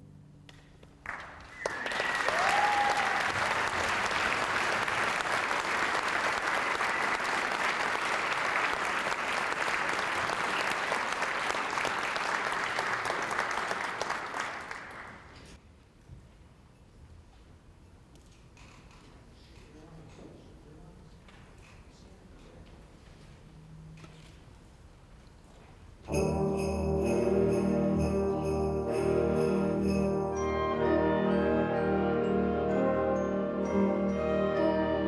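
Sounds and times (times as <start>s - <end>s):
audience applauding: 1.0s - 15.4s.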